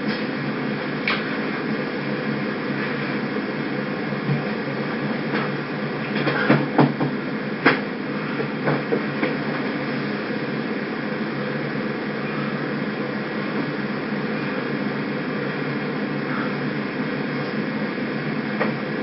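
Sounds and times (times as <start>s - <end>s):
steady hum and hiss: 0.0s - 19.0s
sharp knocks and clicks: 6.2s - 7.8s.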